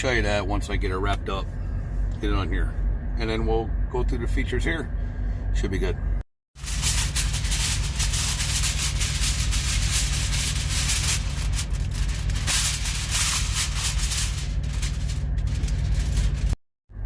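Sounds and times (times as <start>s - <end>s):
steady low hum: 0.0s - 17.0s
plastic wrapping crinkling: 6.6s - 16.6s.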